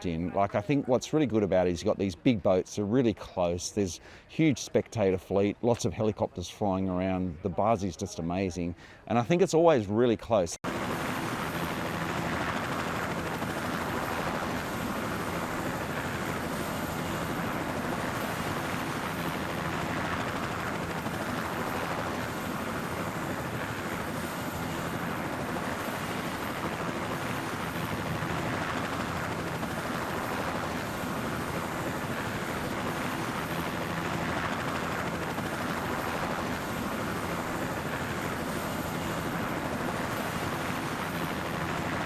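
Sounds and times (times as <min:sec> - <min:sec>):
helicopter engine and rotor drone: 0:10.6 - 0:42.0.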